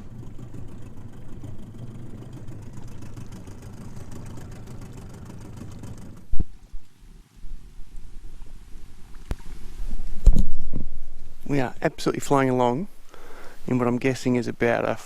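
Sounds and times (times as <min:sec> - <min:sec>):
outboard motor running: 0:00.0 - 0:06.7.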